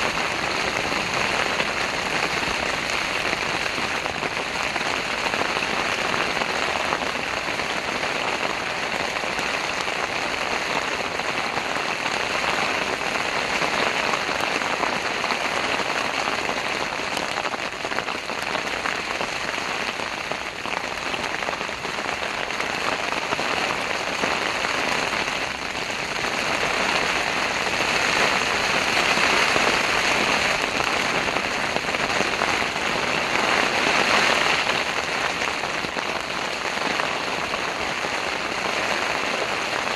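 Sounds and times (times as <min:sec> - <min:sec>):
heavy rain on a tent: 0:00.0 - 0:39.9.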